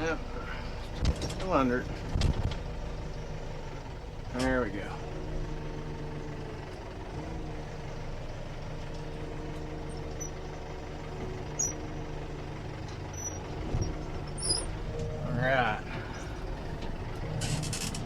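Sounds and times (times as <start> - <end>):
tractor diesel engine running: 0.0 - 18.0
faint high squeaks: 9.3 - 10.8, 11.4 - 15.2, 17.2 - 18.0.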